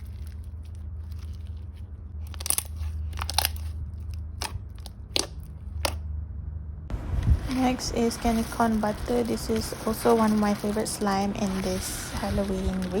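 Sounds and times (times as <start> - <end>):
slime crackling and popping: 0.0 - 6.0
steady low hum: 0.0 - 13.0.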